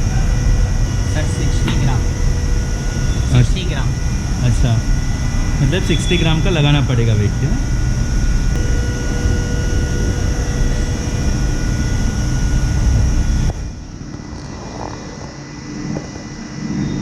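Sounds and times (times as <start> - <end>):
wheel balancing machine whine: 0.0 - 17.0.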